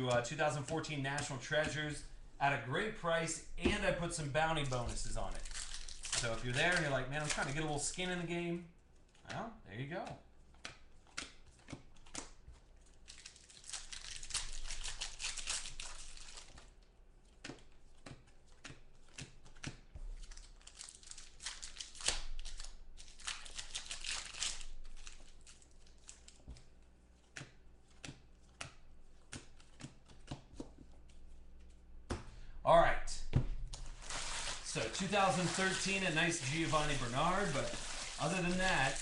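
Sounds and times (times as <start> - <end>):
card pack wrappers tearing: 4.1 - 8.2, 12.0 - 16.7, 19.5 - 26.7, 33.8 - 39.0
cards clicking: 26.0 - 31.8.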